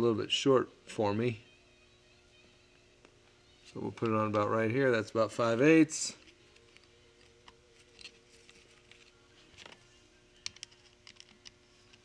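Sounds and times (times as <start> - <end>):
faint steady hum: 0.0 - 12.0
clicks and handling noises: 3.0 - 4.5, 6.1 - 12.0.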